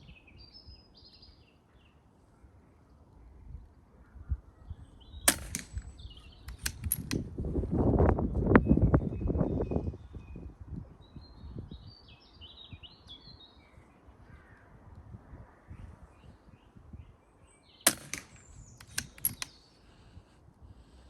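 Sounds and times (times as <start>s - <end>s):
wind on microphone: 3.5s - 12.0s
birds chirping: 4.8s - 7.2s, 16.2s - 20.3s
air rifle shot: 5.3s - 7.2s, 17.9s - 19.6s
quick clicks: 5.3s - 7.2s, 17.9s - 20.0s.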